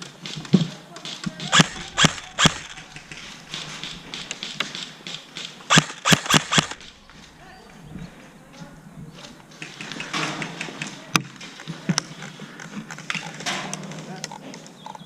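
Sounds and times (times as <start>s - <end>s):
airsoft gun shots: 1.4s - 10.7s.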